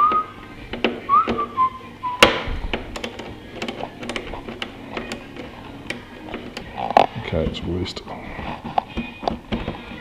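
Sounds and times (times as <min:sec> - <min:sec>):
loud plastic snap: 0:02.2 - 0:05.2
plastic panel clicks and taps: 0:02.2 - 0:06.7.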